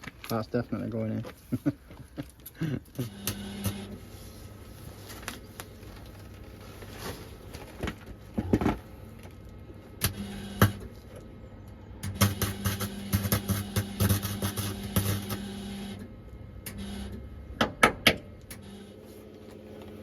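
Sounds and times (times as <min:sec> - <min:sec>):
welding machine humming: 0:03.0 - 0:06.6, 0:10.0 - 0:11.1, 0:12.0 - 0:17.5, 0:18.4 - 0:20.0.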